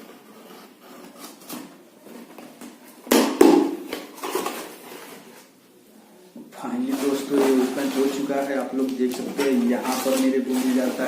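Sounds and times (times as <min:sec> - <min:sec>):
packaging being cut: 0:06.8 - 0:11.0
packaging tearing: 0:06.8 - 0:11.0.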